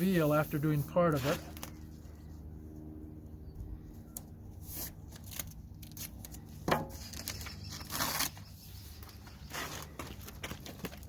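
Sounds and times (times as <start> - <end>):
steady low hum: 0.0 - 11.0
tape pulled and torn: 4.1 - 9.8.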